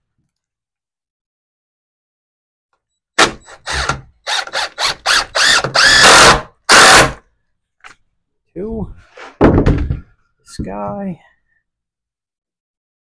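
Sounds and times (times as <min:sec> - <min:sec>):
power drill driving screws: 0:03.2 - 0:07.2.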